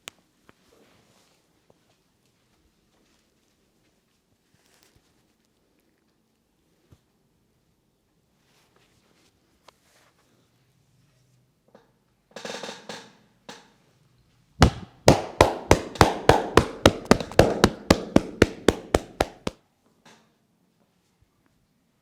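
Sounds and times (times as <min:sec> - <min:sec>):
hand rubbing skin: 0:14.6 - 0:19.5
sharp massage slaps: 0:14.6 - 0:19.5.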